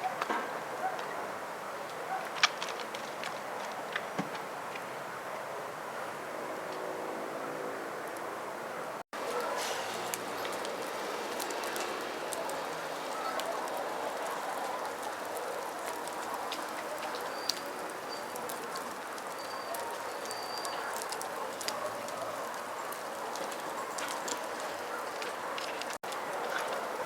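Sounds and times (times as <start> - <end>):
campfire crackling and popping: 2.2 - 4.1, 9.1 - 27.0.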